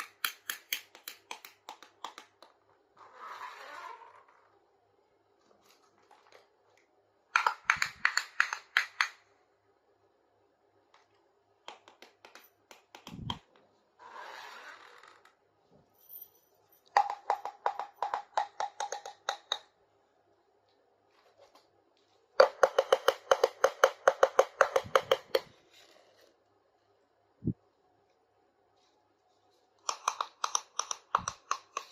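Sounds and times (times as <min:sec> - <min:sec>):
plastic toy pieces clicking: 0:07.4 - 0:09.2, 0:29.8 - 0:31.9.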